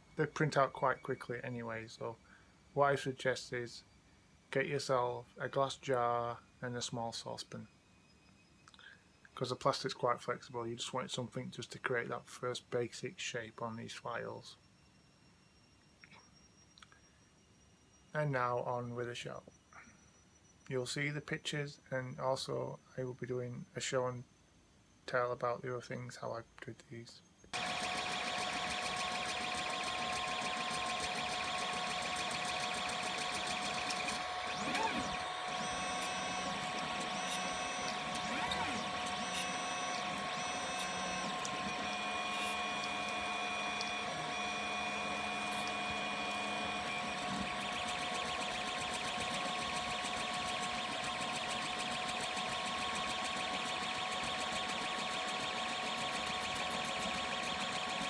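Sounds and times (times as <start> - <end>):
printer motors and fans whining: 27.6 - 58.0
stepper motor tones: 27.6 - 58.0.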